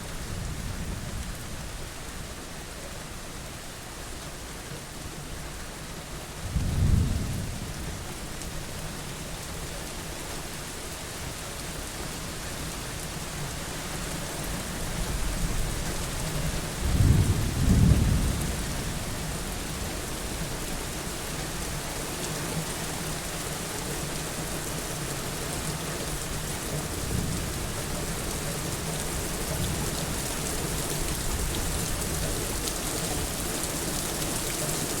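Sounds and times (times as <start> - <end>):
steady rain hiss: 0.0 - 35.0
thunder rumbles: 6.5 - 8.0, 16.8 - 19.4.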